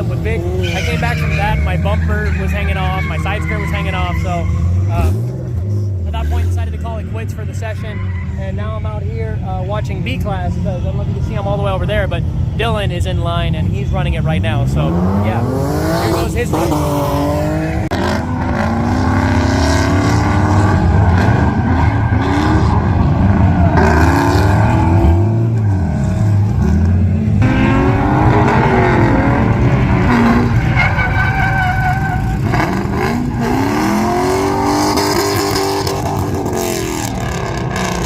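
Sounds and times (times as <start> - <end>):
car engine revving: 0.0 - 7.9, 9.9 - 38.0
tire squeal: 0.3 - 5.3, 6.1 - 9.4, 16.0 - 26.4, 27.4 - 38.0.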